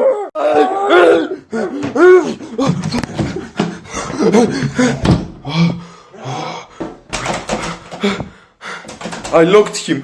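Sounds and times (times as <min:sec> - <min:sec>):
knocks and thumps: 0:02.6 - 0:05.8, 0:06.8 - 0:09.5.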